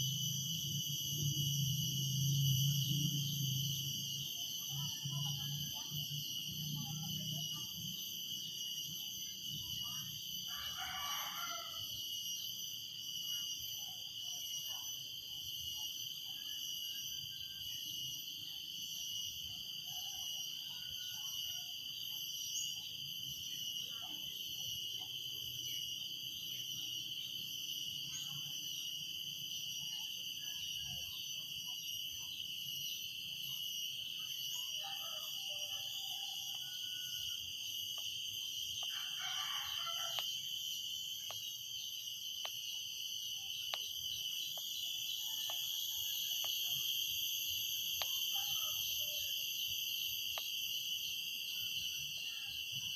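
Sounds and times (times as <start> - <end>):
cicadas droning: 0.0 - 52.9
rooster crowing: 10.5 - 12.0, 38.8 - 40.4.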